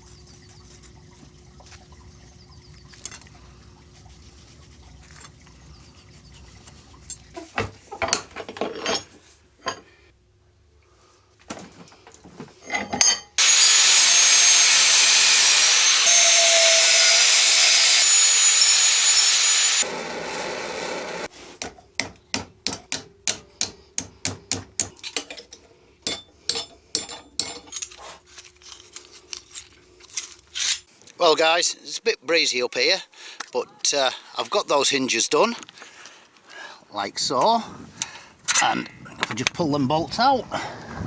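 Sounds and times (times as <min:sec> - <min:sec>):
power tool cutting metal: 0:13.4 - 0:21.3.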